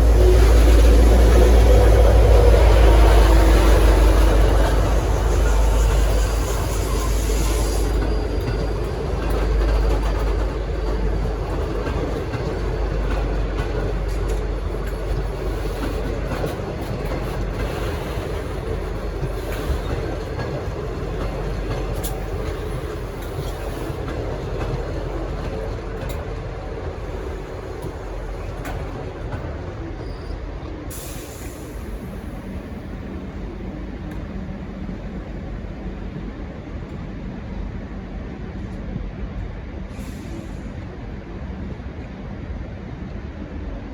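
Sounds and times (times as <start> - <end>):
train wheel clicks: 0.0 - 29.8
train rumble: 0.0 - 43.9.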